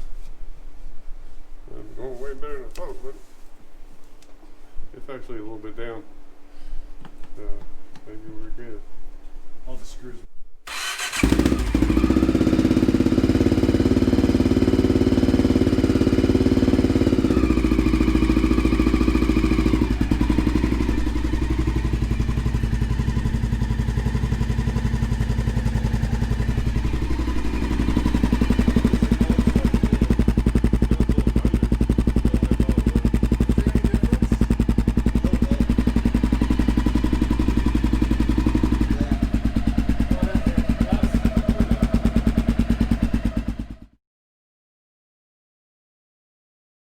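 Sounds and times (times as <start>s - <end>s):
motorcycle engine idling: 10.7s - 43.9s.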